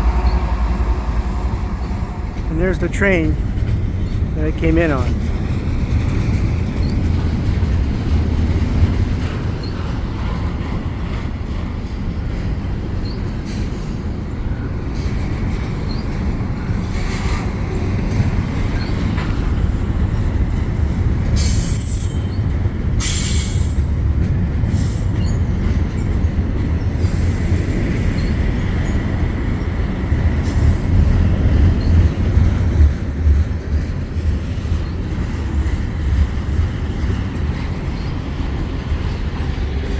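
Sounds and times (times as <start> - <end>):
train wheels rumbling on rail: 0.0 - 39.9
high wheel squeals: 36.8 - 39.9.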